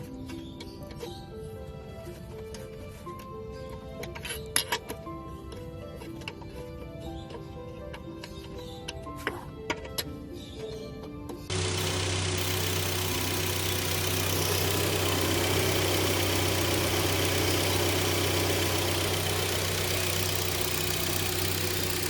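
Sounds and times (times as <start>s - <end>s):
car engine idling: 11.5s - 22.0s.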